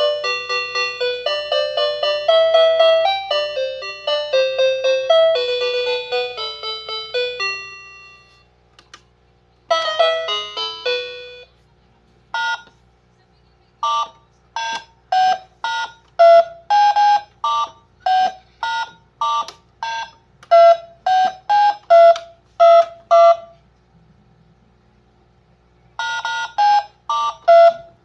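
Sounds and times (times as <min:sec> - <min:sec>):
toy telephone button beeps: 0:12.4 - 0:12.7, 0:13.8 - 0:23.6, 0:26.0 - 0:28.0.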